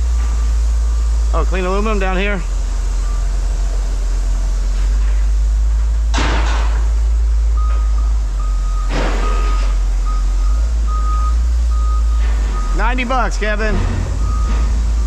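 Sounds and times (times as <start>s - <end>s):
reversing alarm beeping: 0.0s - 3.4s, 7.5s - 15.0s
diesel engine rumble: 0.0s - 15.0s.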